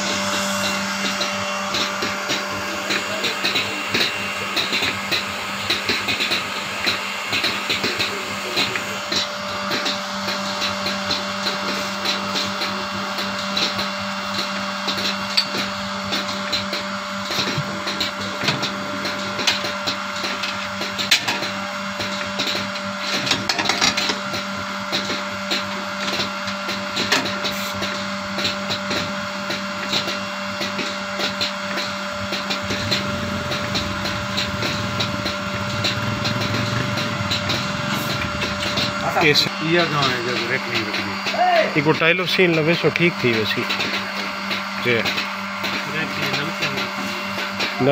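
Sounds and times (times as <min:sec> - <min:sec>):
machinery humming and whining: 0:00.0 - 0:47.9
rapid clicking and clattering: 0:32.3 - 0:41.4.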